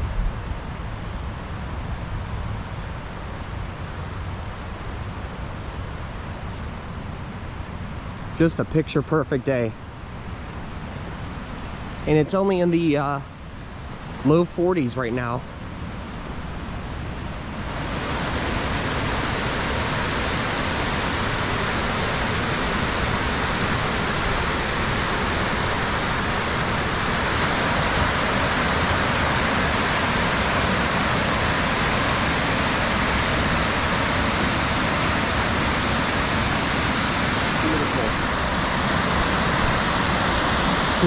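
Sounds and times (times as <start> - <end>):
waterfall rushing: 17.4 - 41.0.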